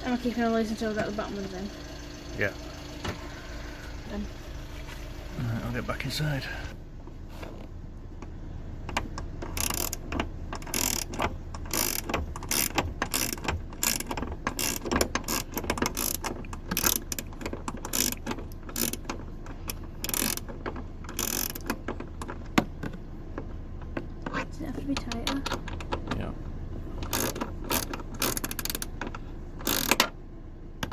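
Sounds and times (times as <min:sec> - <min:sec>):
socket ratchet clicking: 0:08.9 - 0:22.0, 0:27.0 - 0:30.2.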